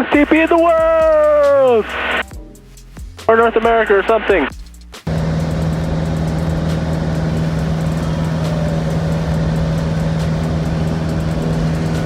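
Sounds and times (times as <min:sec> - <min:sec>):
small plane engine droning: 0:05.1 - 0:12.0.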